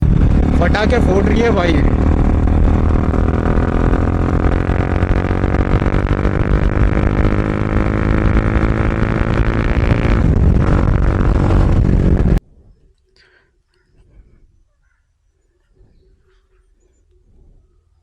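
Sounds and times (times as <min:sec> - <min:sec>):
motorcycle engine deep exhaust: 0:00.0 - 0:12.4.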